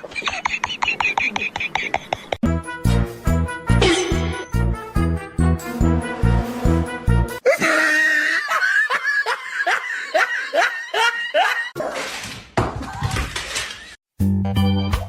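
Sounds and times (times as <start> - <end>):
person laughing: 0.0 - 2.4, 3.8 - 4.5, 7.4 - 11.8.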